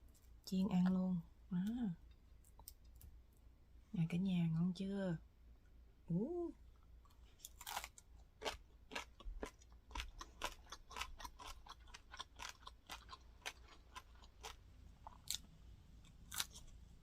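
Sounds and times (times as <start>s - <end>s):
chewing crunchy food: 7.0s - 16.8s.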